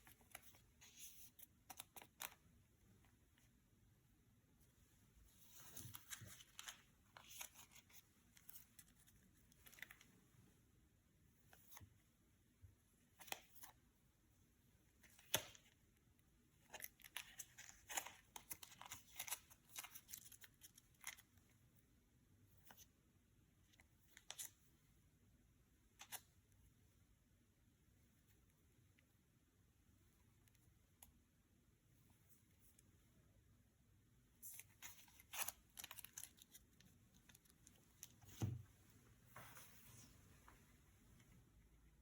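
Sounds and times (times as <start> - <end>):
cards and wrappers crinkling: 34.4 - 38.2.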